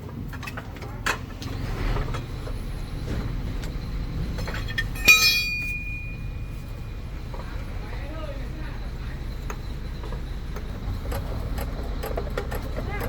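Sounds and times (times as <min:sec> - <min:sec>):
low steady rumble: 0:00.2 - 0:13.0
ringing metallic clang: 0:04.6 - 0:06.7
metal tools clicking: 0:04.7 - 0:06.2.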